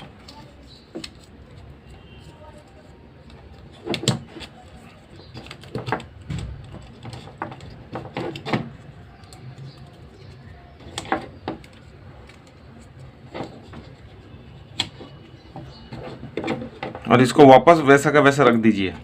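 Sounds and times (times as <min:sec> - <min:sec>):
clicks and taps on plastic housing: 0:03.2 - 0:17.1.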